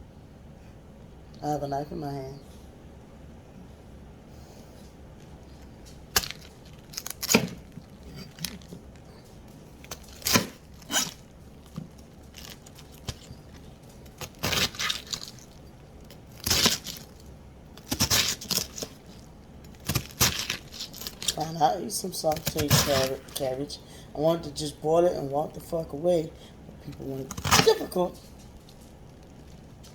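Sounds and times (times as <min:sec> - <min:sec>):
knife cutting cabbage: 0:06.1 - 0:08.7, 0:09.8 - 0:17.2, 0:17.8 - 0:21.6, 0:22.3 - 0:23.6, 0:26.8 - 0:28.2.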